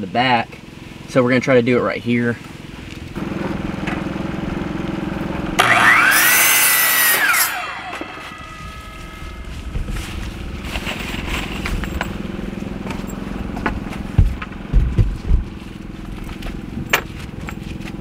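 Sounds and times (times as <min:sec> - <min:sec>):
electric saw cutting wood: 0:03.2 - 0:14.6.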